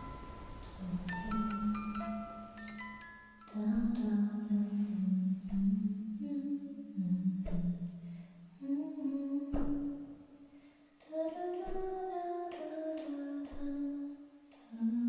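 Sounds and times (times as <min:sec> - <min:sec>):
person humming a slow melody: 0:00.0 - 0:02.8.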